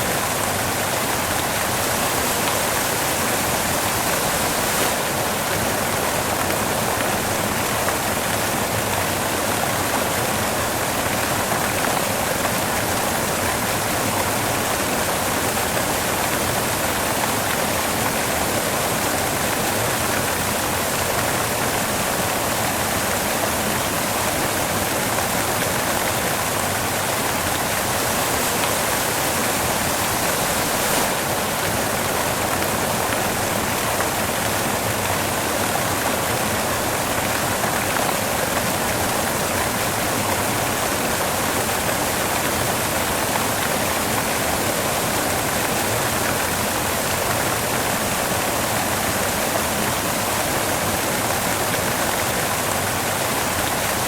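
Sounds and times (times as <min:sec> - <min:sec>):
steady white noise hiss: 0:00.0 - 0:54.0.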